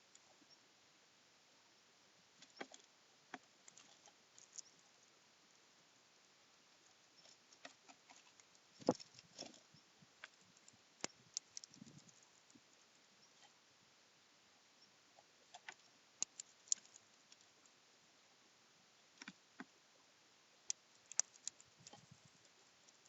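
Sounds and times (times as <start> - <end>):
bird pecking at seeds: 2.4 - 5.1, 6.7 - 13.6, 15.2 - 17.8, 20.6 - 23.0.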